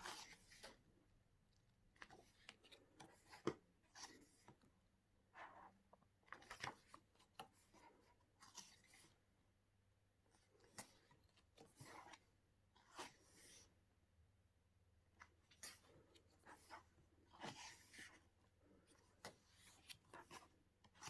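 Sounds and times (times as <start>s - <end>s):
book pages rustling: 0.0s - 0.8s, 1.9s - 4.7s, 5.4s - 9.2s, 10.3s - 13.7s, 15.1s - 21.0s.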